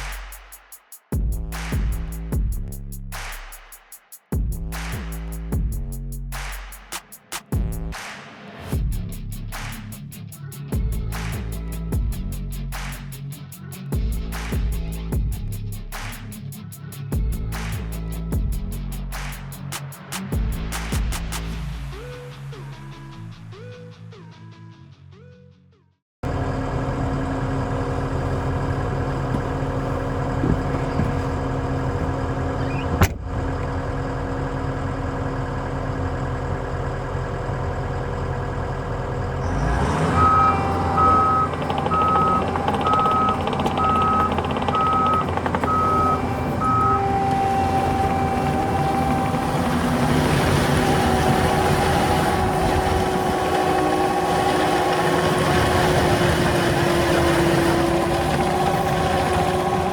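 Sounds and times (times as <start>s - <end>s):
diesel engine running: 26.2s - 59.9s
reversing alarm beeps: 40.1s - 49.4s.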